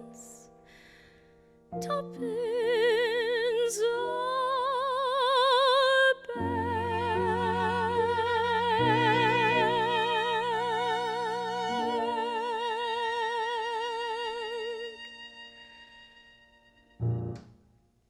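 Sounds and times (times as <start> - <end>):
soft sustained piano chords: 6.4 - 17.6.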